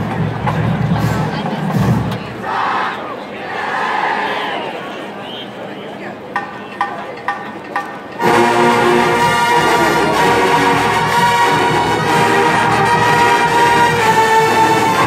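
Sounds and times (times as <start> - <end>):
marching band playing: 0.0 - 2.7, 8.1 - 15.0
brass holding long chords: 8.2 - 15.0.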